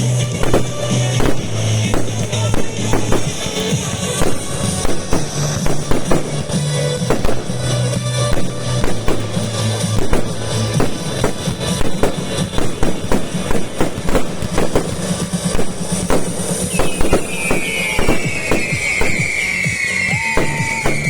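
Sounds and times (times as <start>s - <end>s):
fireworks bangs and crackles: 0.0s - 21.0s
music: 0.0s - 21.0s
descending firework whistle: 16.6s - 21.0s.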